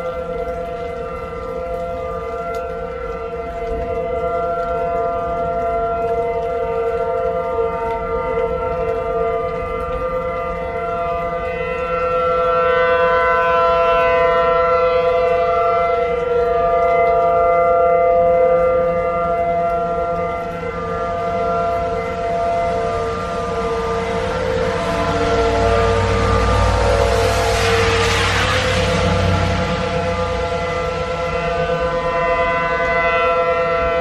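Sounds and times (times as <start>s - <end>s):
warning siren steady tone: 0.0s - 34.0s
rushing noise: 21.5s - 34.0s.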